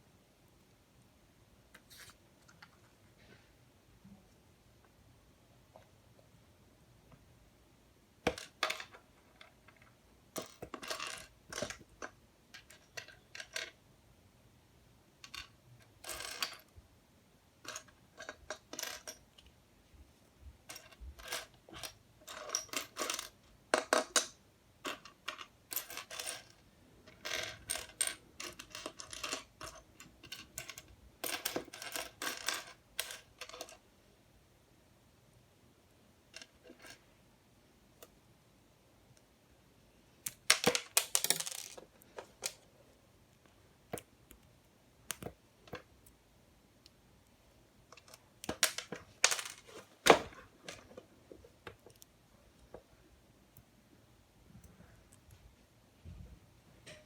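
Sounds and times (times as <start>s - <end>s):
plastic pieces clattering and clicking: 40.2s - 42.6s.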